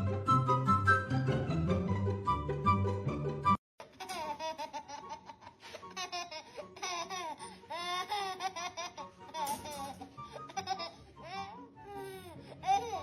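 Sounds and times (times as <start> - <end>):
baby laughing and squealing: 3.8 - 13.0.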